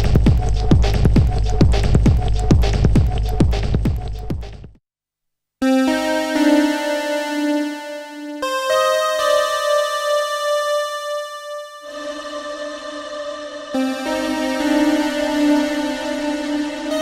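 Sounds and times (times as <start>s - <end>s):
synthesizer chords with reverb: 5.6s - 17.0s
reverberant record tail: 11.8s - 17.0s.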